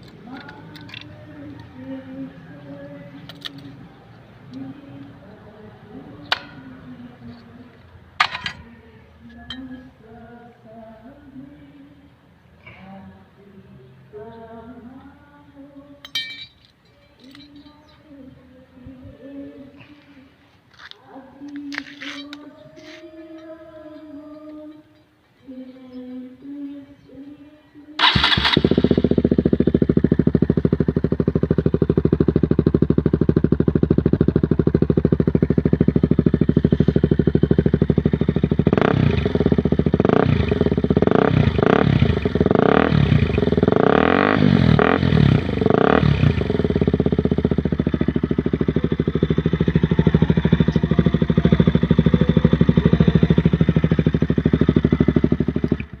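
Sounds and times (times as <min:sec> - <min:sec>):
motorcycle engine idling and revving: 0:00.0 - 0:08.7, 0:28.0 - 0:56.0.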